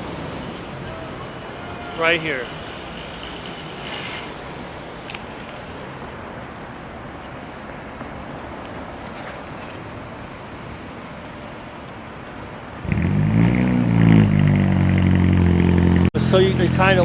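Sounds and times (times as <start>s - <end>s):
city street traffic: 0.0s - 17.0s
nearby vehicle engine: 12.8s - 17.0s.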